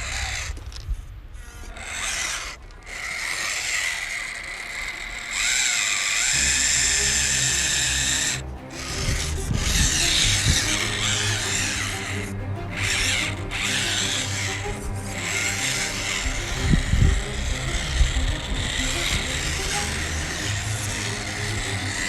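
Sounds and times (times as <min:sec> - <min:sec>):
small electric motor whining: 0:01.9 - 0:22.0
background music with low beat: 0:06.4 - 0:22.0.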